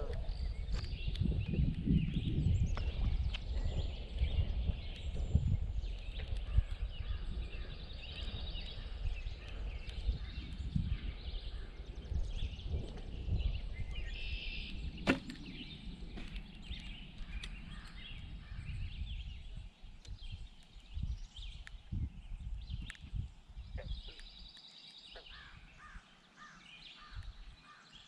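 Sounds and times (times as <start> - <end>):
birds chirping: 0.0 - 28.0
wind rumble on microphone: 0.0 - 28.0
bow snapping: 15.0 - 18.0.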